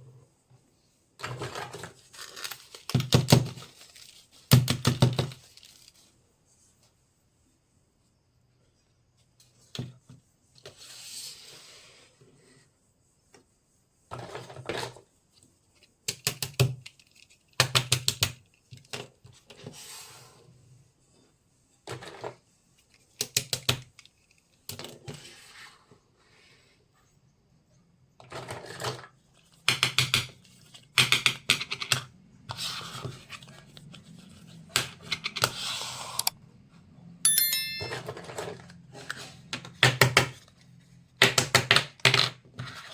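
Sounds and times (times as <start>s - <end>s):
toy pieces clicking and clinking: 37.3s - 38.3s.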